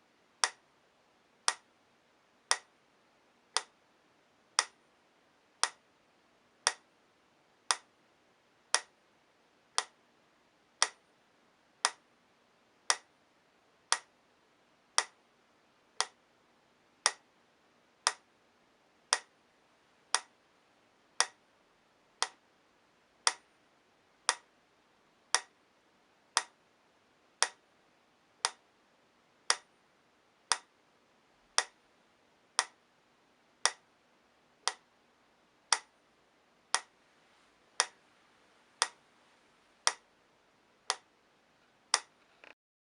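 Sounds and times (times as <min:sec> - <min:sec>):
metronome ticking: 0:00.4 - 0:00.6, 0:01.5 - 0:01.7, 0:02.5 - 0:02.7, 0:03.5 - 0:03.8, 0:04.6 - 0:04.8, 0:05.6 - 0:05.8, 0:06.6 - 0:06.9, 0:07.7 - 0:07.9, 0:08.7 - 0:08.9, 0:09.7 - 0:10.0, 0:10.8 - 0:11.0, 0:11.8 - 0:12.0, 0:12.9 - 0:13.1, 0:13.9 - 0:14.1, 0:15.0 - 0:15.2, 0:16.0 - 0:16.2, 0:17.0 - 0:17.3, 0:19.1 - 0:19.3, 0:20.1 - 0:20.4, 0:21.2 - 0:21.4, 0:22.2 - 0:22.4, 0:23.2 - 0:23.4, 0:24.3 - 0:24.5, 0:25.3 - 0:25.5, 0:26.4 - 0:26.6, 0:27.4 - 0:27.6, 0:28.4 - 0:28.6, 0:29.5 - 0:29.7, 0:30.5 - 0:30.7, 0:31.5 - 0:31.8, 0:32.6 - 0:32.8, 0:33.6 - 0:33.8, 0:34.6 - 0:34.9, 0:35.7 - 0:35.9, 0:36.7 - 0:36.9, 0:37.8 - 0:38.0, 0:39.8 - 0:40.0.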